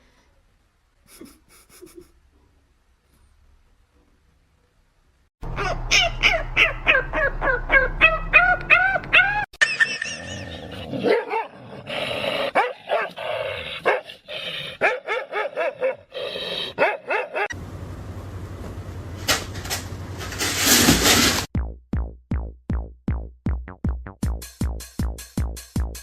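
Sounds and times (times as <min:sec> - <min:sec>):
dog barking: 0:05.5 - 0:09.4, 0:11.0 - 0:11.6, 0:12.5 - 0:13.2, 0:13.8 - 0:14.1, 0:14.8 - 0:16.1, 0:16.8 - 0:17.5
dog whining: 0:05.6 - 0:09.5.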